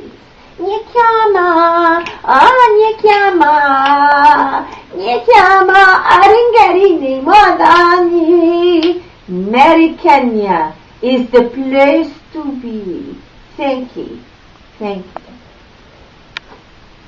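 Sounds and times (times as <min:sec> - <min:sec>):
person singing in high voice: 0:00.0 - 0:13.0.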